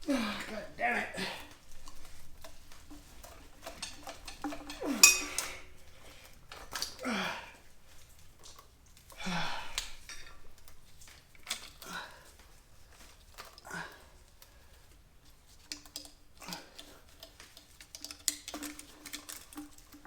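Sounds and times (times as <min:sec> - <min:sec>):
person grunting with effort: 0:00.0 - 0:01.5, 0:07.0 - 0:07.6, 0:09.2 - 0:09.8
metal tools clinking and clanking: 0:02.0 - 0:05.8
sharp metallic clank: 0:04.9 - 0:05.6.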